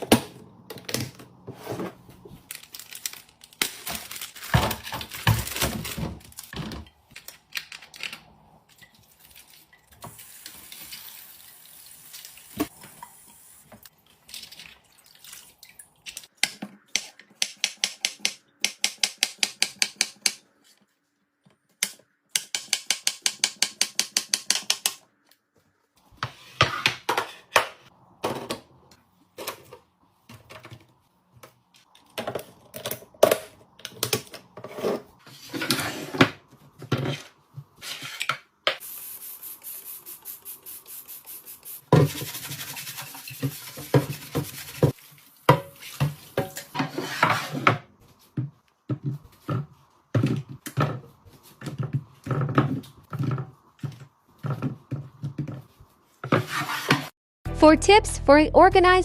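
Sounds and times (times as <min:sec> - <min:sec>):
steady hiss: 0:38.8 - 0:41.9.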